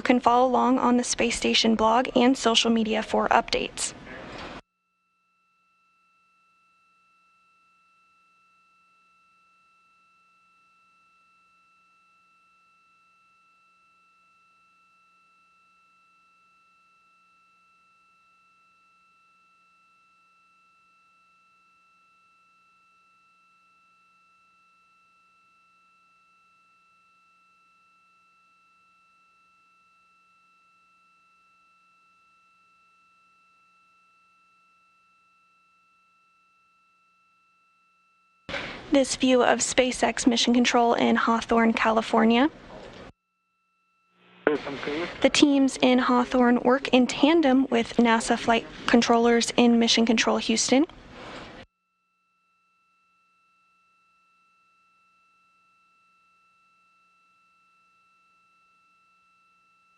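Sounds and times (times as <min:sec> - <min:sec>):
faint steady electronic tone: 0:00.0 - 0:59.9
high-pitched electronic tone: 0:44.2 - 0:46.8.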